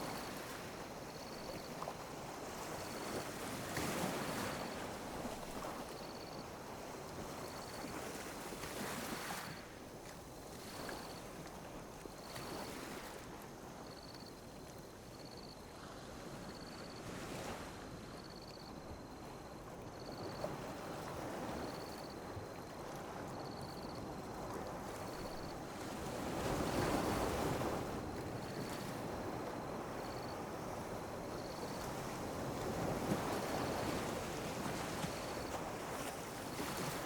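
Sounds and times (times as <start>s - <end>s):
sea waves lapping on beach: 15.8s - 37.0s.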